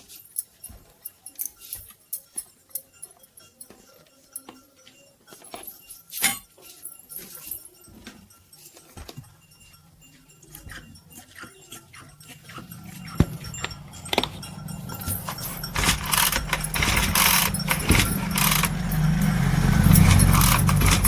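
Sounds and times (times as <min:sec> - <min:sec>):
brush cutter engine running: 0:12.2 - 0:21.0.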